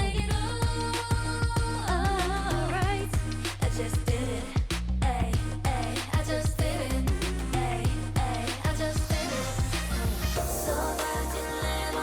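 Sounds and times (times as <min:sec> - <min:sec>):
punchy drum beat: 0:00.0 - 0:11.6
deep bass: 0:00.0 - 0:12.0
female vocals: 0:00.0 - 0:12.0.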